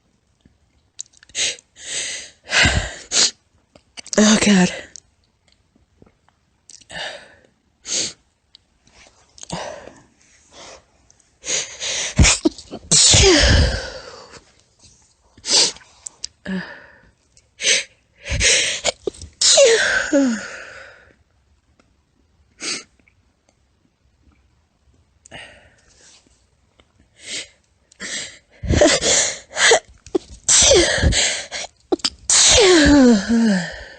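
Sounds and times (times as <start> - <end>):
woman sneezing: 12.1 - 14.0, 18.8 - 20.4, 28.6 - 31.2, 31.9 - 33.4.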